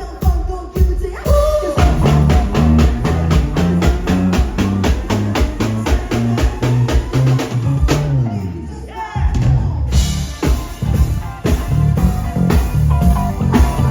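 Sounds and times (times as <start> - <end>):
drum kit: 0.0 - 13.9
guitar: 1.8 - 8.8, 9.9 - 13.9
bass guitar: 1.8 - 13.9.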